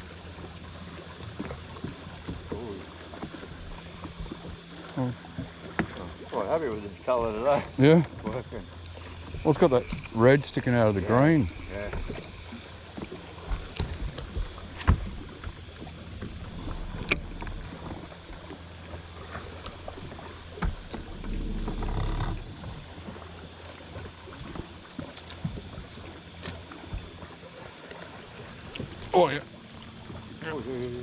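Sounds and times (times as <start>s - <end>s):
steady low hum: 0.0s - 28.6s.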